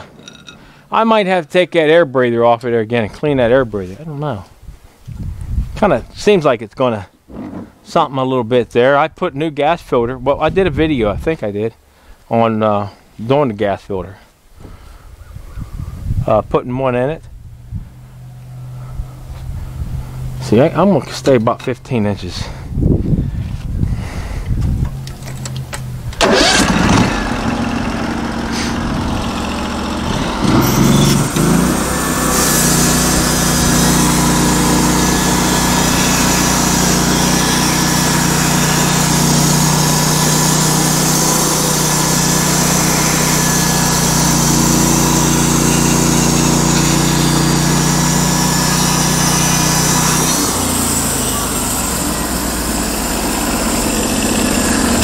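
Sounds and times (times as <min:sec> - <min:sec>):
band saw blade cutting log: 0:26.2 - 0:55.0
sawmill gas engine revving: 0:26.2 - 0:55.0.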